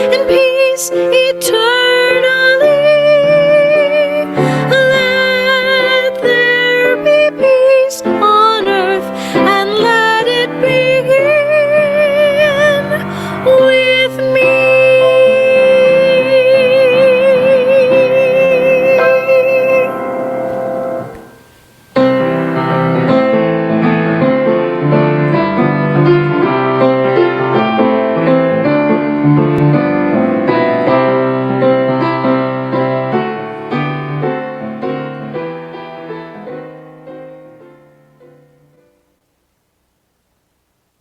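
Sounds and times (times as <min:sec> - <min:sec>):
solo piano playing slow chords: 0:00.0 - 0:39.1
held note with vibrato: 0:11.9 - 0:23.2.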